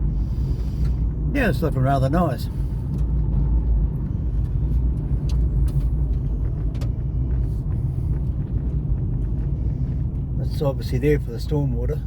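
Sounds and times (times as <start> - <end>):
car engine and tyres rumbling: 0.0 - 12.0.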